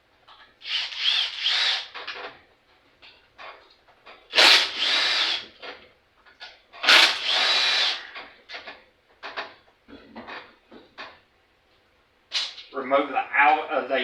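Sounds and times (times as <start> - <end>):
power drill backing out bolts: 6.8 - 8.2
clicks and clatter of parts: 8.1 - 11.2.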